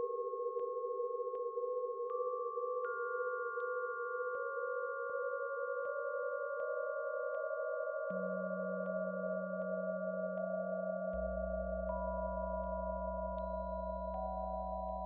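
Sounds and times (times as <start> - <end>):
synthesiser drone of sine tones: 10.7 - 15.0.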